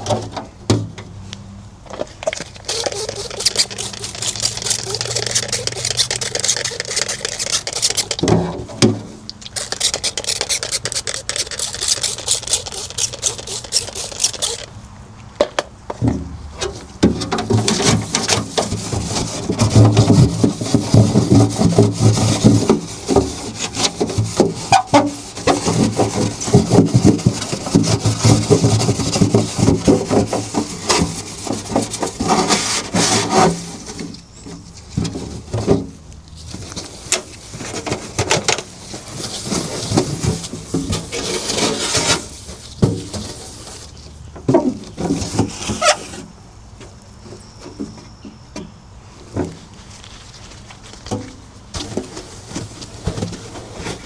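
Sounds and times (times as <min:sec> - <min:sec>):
scrubbing on a refrigerator: 0:02.7 - 0:08.2, 0:09.6 - 0:14.7.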